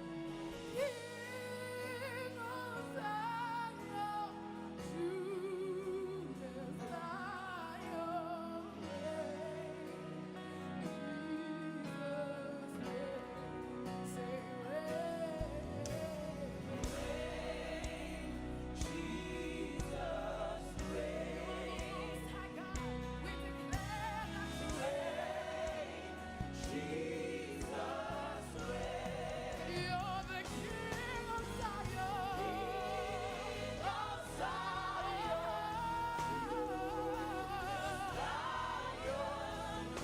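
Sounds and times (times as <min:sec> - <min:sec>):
voices singing with vibrato: 0:15.4 - 0:40.0
band accompaniment: 0:15.5 - 0:40.0.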